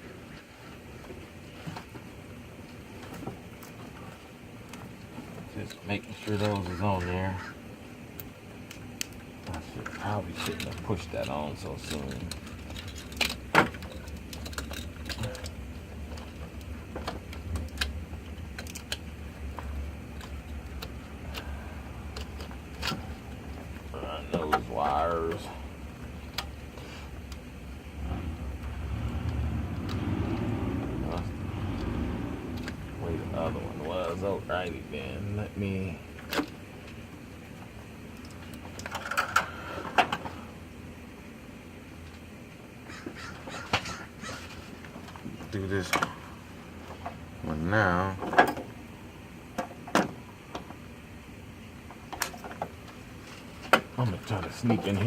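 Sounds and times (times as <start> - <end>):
steady low hum: 0.0 - 55.0
small parts clicking and knocking: 8.1 - 25.4, 37.6 - 40.3.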